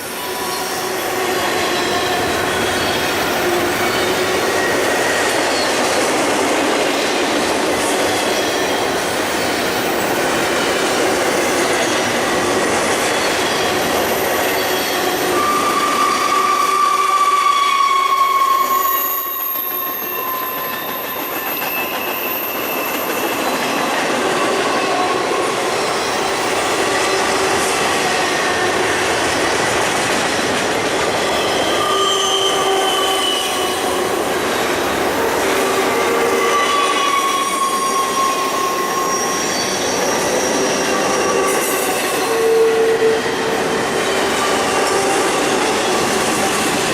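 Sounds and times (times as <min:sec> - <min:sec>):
freight train wheels rumbling: 0:00.0 - 0:46.9
metallic wheel squeals: 0:11.8 - 0:27.6, 0:31.2 - 0:34.1, 0:35.3 - 0:46.4.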